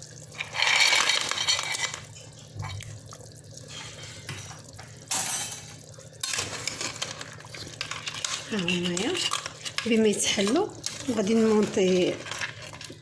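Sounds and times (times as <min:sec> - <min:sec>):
clams clattering in metal pot: 0:00.4 - 0:02.1, 0:05.1 - 0:13.0.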